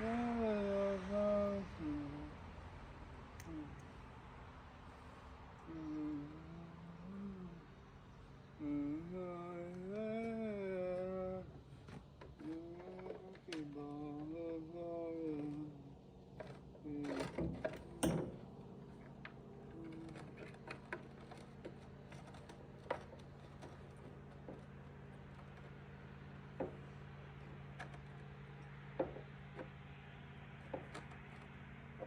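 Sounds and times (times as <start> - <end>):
steady low hum: 0.0 - 32.0
clicks and knocks of hand work: 11.5 - 32.0.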